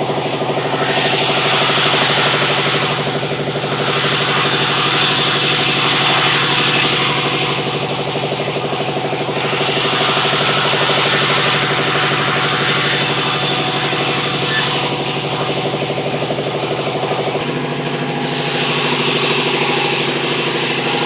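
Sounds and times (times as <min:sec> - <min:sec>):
engine drone: 0:00.0 - 0:21.0
hiss: 0:18.1 - 0:21.0.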